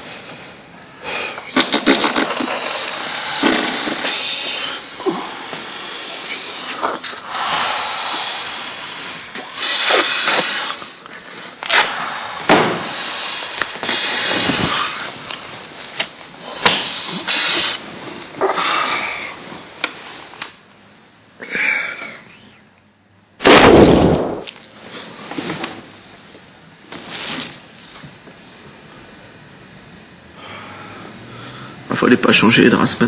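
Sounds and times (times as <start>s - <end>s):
person snoring: 2.4s - 10.8s.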